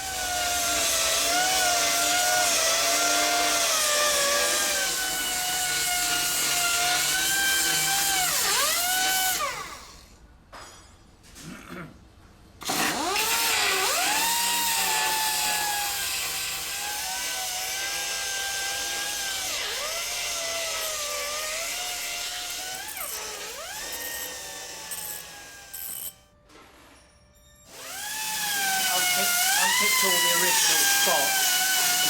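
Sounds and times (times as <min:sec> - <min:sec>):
power tool motor whining: 0:12.6 - 0:26.2, 0:27.7 - 0:32.0.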